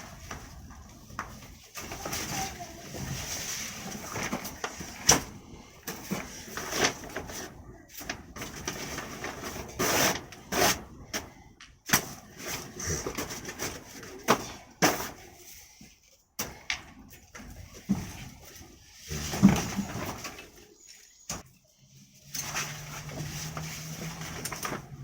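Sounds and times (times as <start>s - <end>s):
rustling scrapes: 0.0s - 11.0s, 17.7s - 25.0s.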